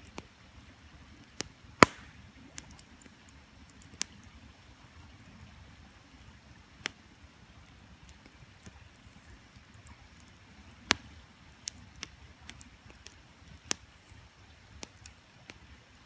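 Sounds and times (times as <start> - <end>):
campfire crackling and popping: 0.0 - 16.0.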